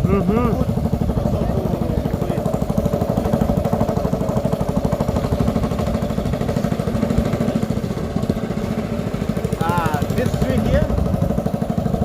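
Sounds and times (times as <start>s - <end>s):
boat motor chugging: 0.0s - 12.0s.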